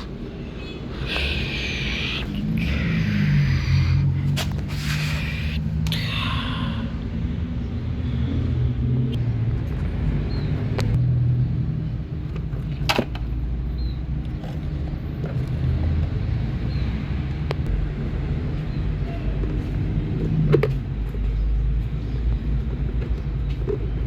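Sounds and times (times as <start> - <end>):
motor rumble and hum: 0.0 - 24.0.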